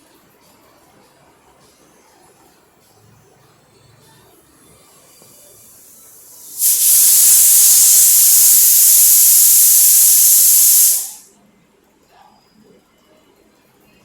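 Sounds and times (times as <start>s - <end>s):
loud steady hiss: 5.3s - 11.3s.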